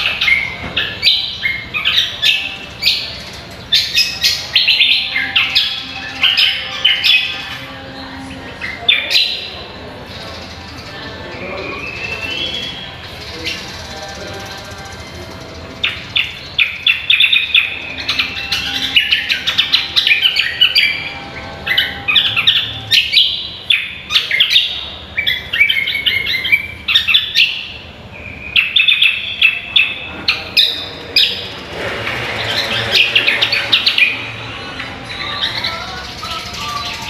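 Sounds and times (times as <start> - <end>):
bird singing chirps and whistles: 0.0 - 7.7, 10.8 - 31.5.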